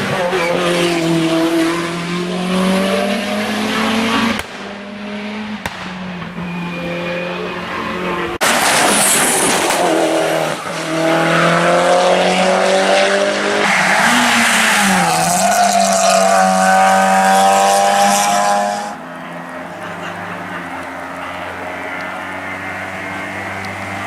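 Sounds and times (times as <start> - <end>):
race car engine at full throttle: 0.0 - 24.0.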